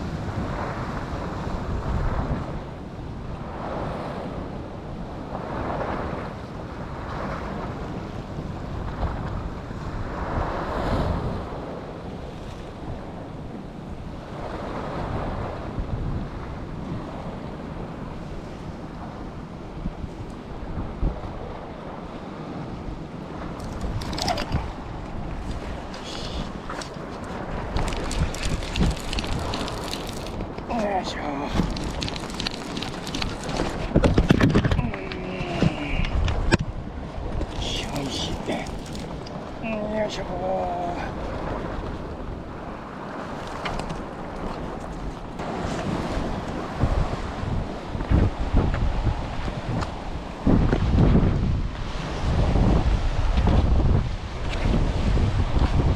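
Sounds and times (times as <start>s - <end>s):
sea surf: 0.0s - 55.9s
wind buffeting microphone: 0.0s - 55.9s
clicks and rattles: 23.6s - 24.7s, 25.4s - 36.6s, 37.5s - 39.4s.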